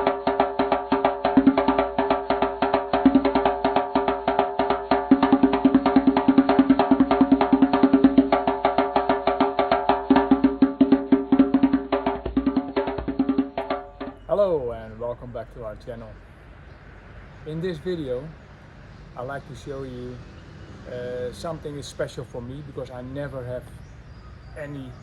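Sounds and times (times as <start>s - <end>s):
woodblock-like percussion: 0.0s - 14.3s.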